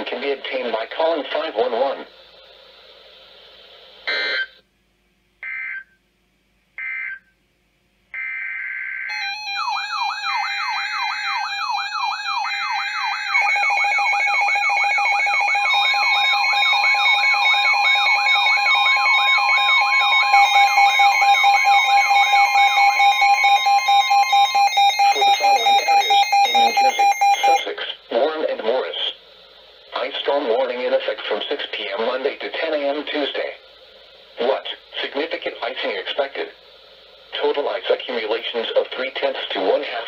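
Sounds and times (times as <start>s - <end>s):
long steady attention tone: 0.0s - 40.0s
siren-like warble alarm: 5.4s - 5.9s, 6.8s - 7.2s, 8.2s - 27.8s
steady and pulsing beeps: 8.2s - 31.7s
screechy digital data bursts: 15.7s - 27.8s.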